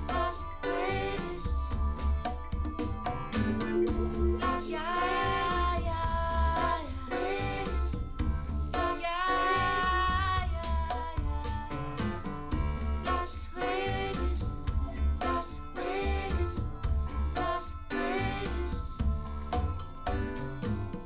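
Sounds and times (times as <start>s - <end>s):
woman singing: 0.0s - 2.1s, 4.3s - 12.0s, 12.6s - 19.3s
guitar: 0.0s - 21.0s
pulsing bass line: 0.0s - 21.0s.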